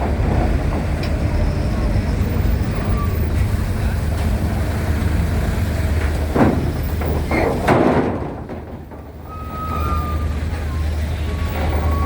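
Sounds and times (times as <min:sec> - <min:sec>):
heavy vehicle engines rumbling: 0:00.0 - 0:12.0
loud metallic clanks: 0:06.0 - 0:10.1.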